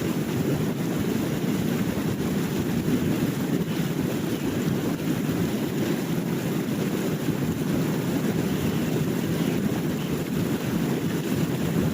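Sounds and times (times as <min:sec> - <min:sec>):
surf washing: 0:00.0 - 0:11.9
wind buffeting microphone: 0:00.0 - 0:11.9.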